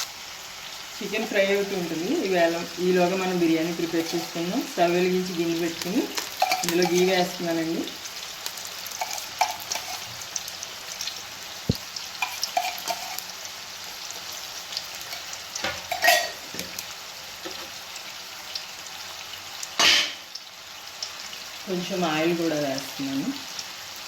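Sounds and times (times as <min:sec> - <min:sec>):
oil sizzling in a pan: 0:00.0 - 0:24.0
scrape or clatter: 0:09.0 - 0:10.1, 0:12.2 - 0:13.2.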